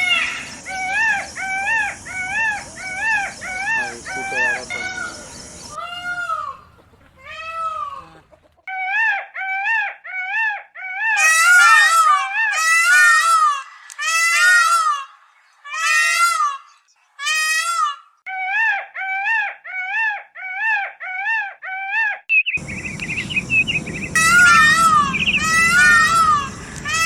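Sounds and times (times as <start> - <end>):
steady background hiss: 0.0 - 5.8, 22.6 - 27.0
peafowl wailing calls: 0.0 - 9.6, 11.1 - 18.0, 22.5 - 27.0.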